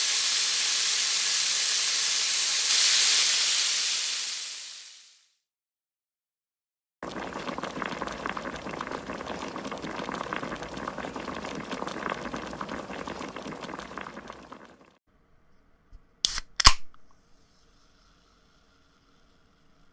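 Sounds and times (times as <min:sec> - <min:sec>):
water boiling in a pot: 0:07.0 - 0:15.0.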